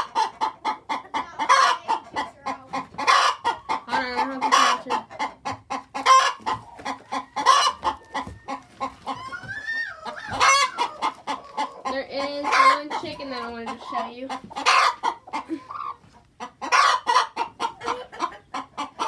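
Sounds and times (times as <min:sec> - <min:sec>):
hens clucking: 0:00.0 - 0:19.0
hen calling: 0:06.0 - 0:16.0.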